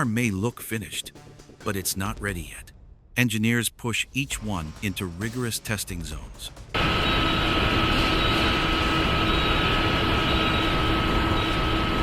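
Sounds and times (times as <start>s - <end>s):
industrial machinery drone: 6.7s - 12.0s
high-pitched whine: 6.8s - 12.0s.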